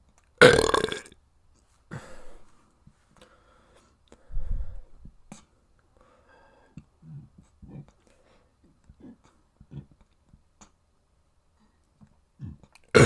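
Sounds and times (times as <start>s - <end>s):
short low burp: 0.4s - 1.1s, 12.4s - 13.0s
faint breathing: 1.9s - 9.4s
soft low grunts: 7.0s - 8.0s, 8.9s - 10.1s, 12.4s - 12.8s
mouth and throat noises: 8.8s - 10.8s, 12.4s - 13.0s.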